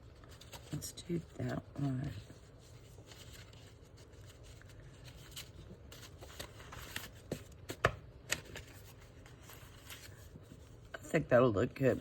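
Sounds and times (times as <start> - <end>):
paper rustling and shuffling: 0.0 - 12.0.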